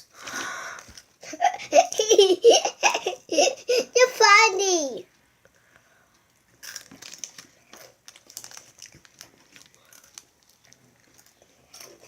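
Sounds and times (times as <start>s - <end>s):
plastic packaging crinkling: 6.3s - 12.0s.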